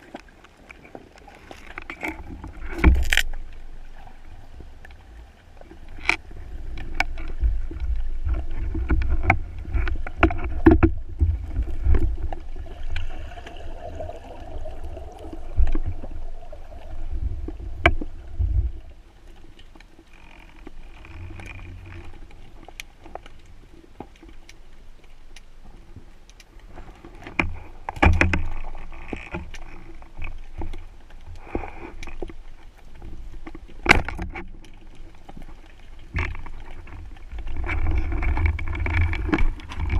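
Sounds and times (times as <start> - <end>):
underwater water rushing: 0.0 - 24.9, 26.0 - 39.9
sharp clicks and knocks: 6.8 - 12.1.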